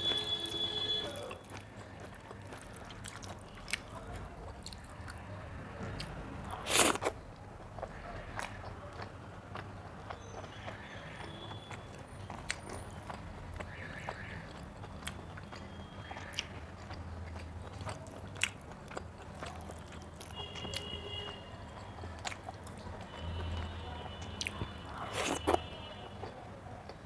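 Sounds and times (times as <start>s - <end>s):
chewing and biting food: 0.0s - 27.0s
wet mouth clicks and smacks: 24.4s - 25.6s.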